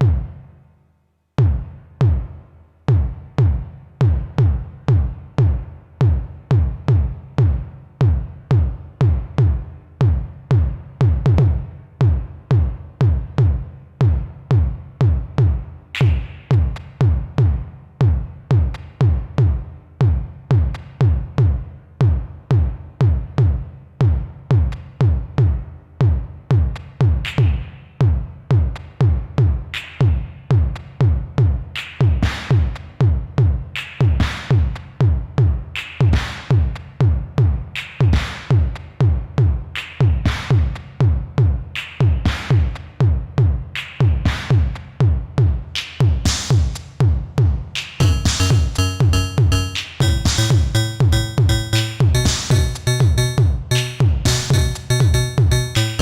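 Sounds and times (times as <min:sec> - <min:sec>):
noisy bright synth hits: 0:48.0 - 0:56.0
percussive synth bass notes: 0:48.0 - 0:56.0.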